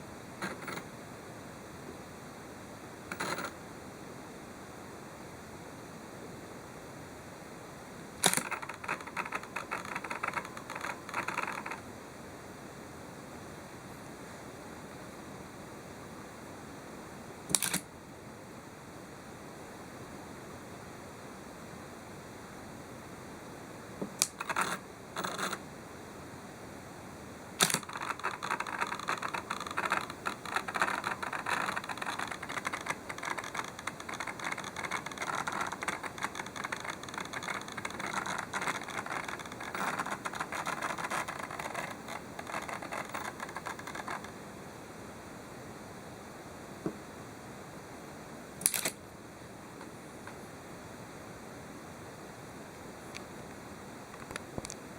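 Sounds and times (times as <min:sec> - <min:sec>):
fast crackling rattle: 0:08.2 - 0:11.8, 0:27.6 - 0:44.4.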